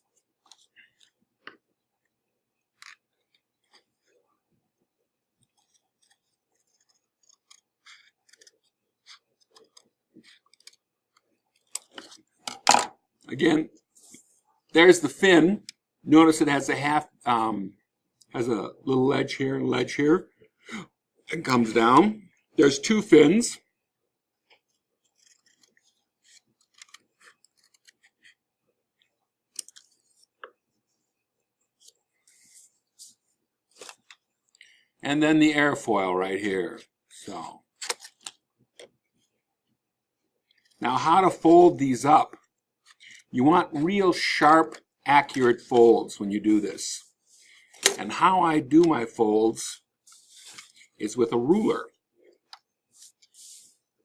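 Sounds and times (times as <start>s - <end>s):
paper rustling and clicking: 0.1s - 1.6s, 5.4s - 12.7s, 24.5s - 28.4s, 29.0s - 30.6s, 31.8s - 34.2s, 37.8s - 39.0s
paper rustling: 24.5s - 28.4s, 31.7s - 34.2s, 50.0s - 51.6s, 52.9s - 53.8s.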